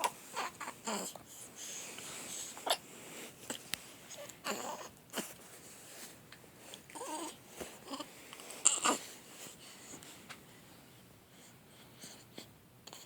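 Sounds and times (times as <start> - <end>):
baby whimpering: 0.0 - 1.2, 4.2 - 5.3, 7.0 - 9.0.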